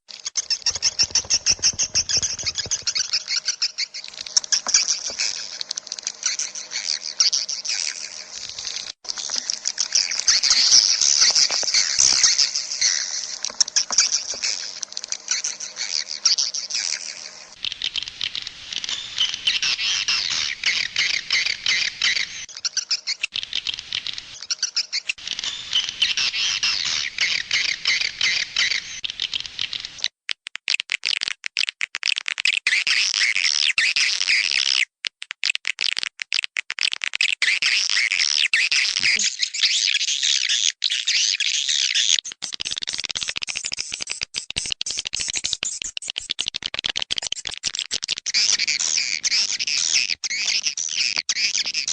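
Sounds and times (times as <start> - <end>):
swiftlets twittering: 0.1 - 29.3.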